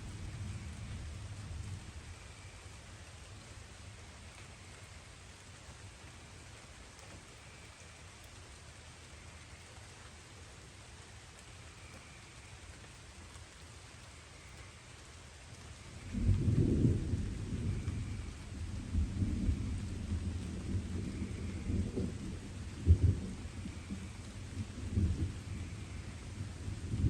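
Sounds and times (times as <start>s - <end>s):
light rain falling: 0.0s - 27.0s
distant thunder rumbling: 16.0s - 27.0s.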